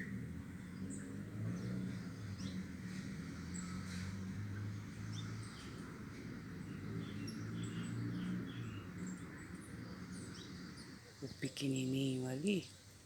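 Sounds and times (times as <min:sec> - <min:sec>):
small birds chirping: 0:00.0 - 0:12.9.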